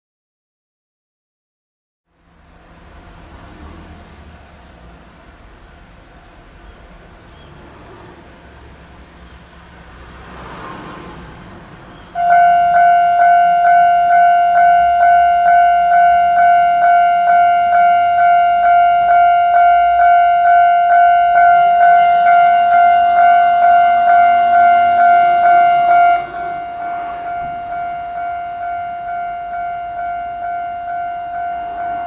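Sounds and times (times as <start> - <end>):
railroad crossing bell clanging: 10.3 - 32.0.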